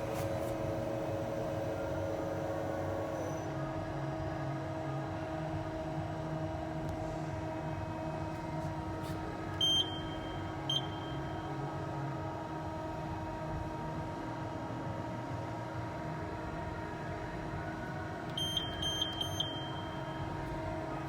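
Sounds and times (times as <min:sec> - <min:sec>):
lathe humming: 0:00.0 - 0:03.2.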